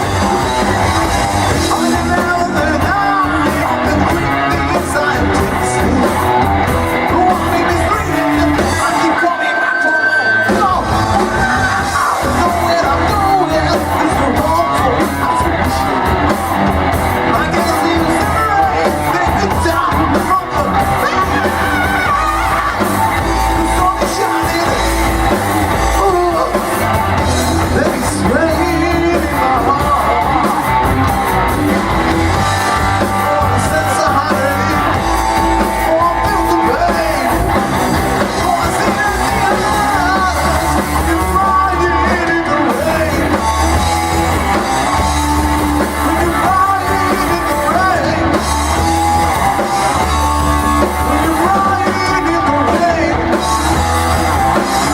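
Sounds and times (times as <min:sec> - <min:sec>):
person singing: 0:00.0 - 0:54.9
rock band playing live: 0:00.0 - 0:54.9.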